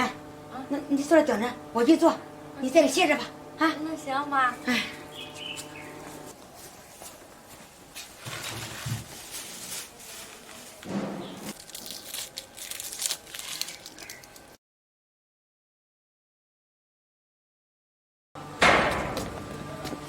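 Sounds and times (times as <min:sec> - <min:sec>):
rustling: 0:06.4 - 0:14.5.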